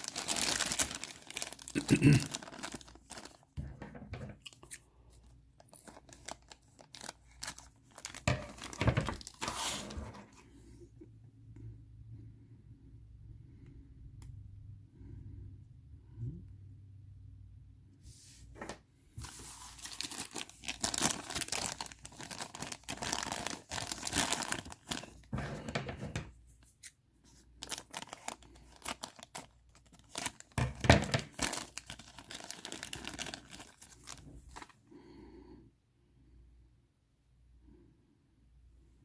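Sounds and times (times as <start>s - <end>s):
plastic bags tearing and crinkling: 0.0s - 4.5s, 5.7s - 10.4s, 19.2s - 25.9s, 27.6s - 34.7s.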